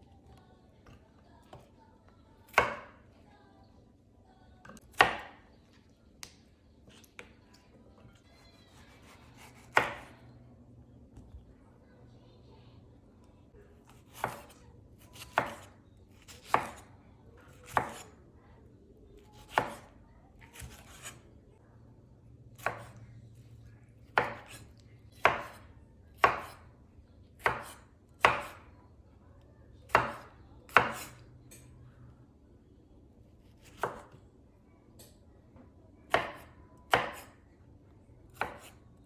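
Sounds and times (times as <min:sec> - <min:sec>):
knife chopping on cutting board: 0:04.9 - 0:05.4, 0:08.6 - 0:10.2, 0:14.0 - 0:16.9, 0:17.6 - 0:18.1, 0:19.3 - 0:19.9, 0:20.5 - 0:21.2, 0:22.6 - 0:23.0, 0:24.2 - 0:24.6, 0:25.2 - 0:26.6, 0:27.4 - 0:28.6, 0:29.9 - 0:31.2, 0:33.4 - 0:34.2, 0:36.1 - 0:37.3, 0:38.3 - 0:38.8.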